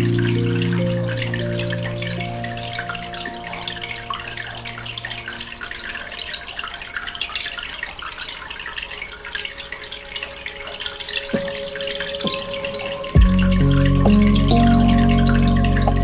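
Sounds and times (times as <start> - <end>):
aquarium water bubbling: 0.0 - 16.0
soft held music notes: 9.6 - 16.0.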